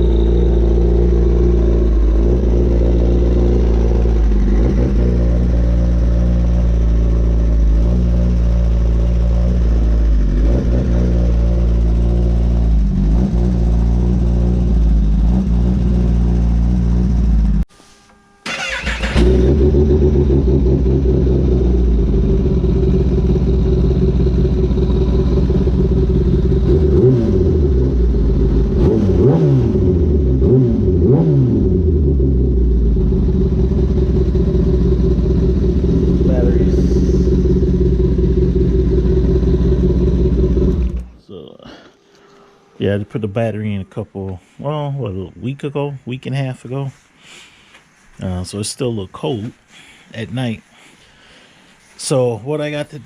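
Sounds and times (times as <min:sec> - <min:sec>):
motorcycle engine running: 0:00.0 - 0:17.7, 0:18.5 - 0:41.2.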